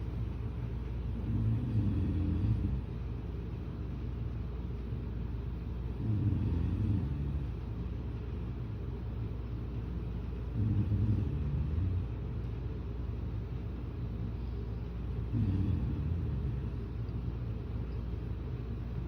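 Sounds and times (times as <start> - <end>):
person snoring: 15.3 - 16.6.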